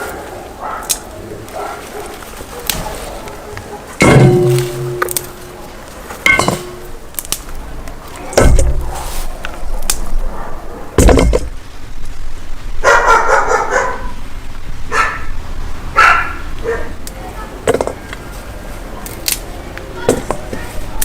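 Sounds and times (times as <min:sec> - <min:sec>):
dog barking: 0:00.0 - 0:05.1, 0:08.8 - 0:11.0, 0:12.8 - 0:14.2, 0:14.9 - 0:15.3, 0:15.9 - 0:17.0
heavy thuds: 0:04.0 - 0:07.0, 0:08.3 - 0:09.1, 0:11.0 - 0:11.6.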